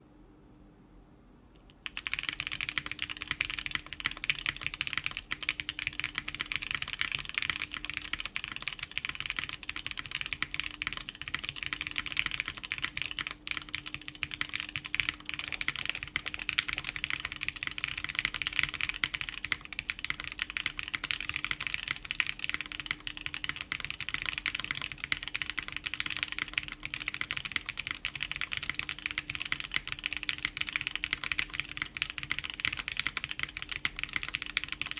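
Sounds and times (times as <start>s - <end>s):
fast typing on mechanical keyboard: 1.7s - 34.9s.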